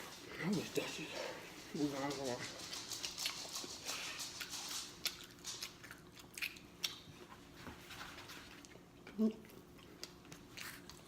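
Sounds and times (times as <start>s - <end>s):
person chewing and lip smacking: 2.6s - 7.5s, 8.6s - 11.0s.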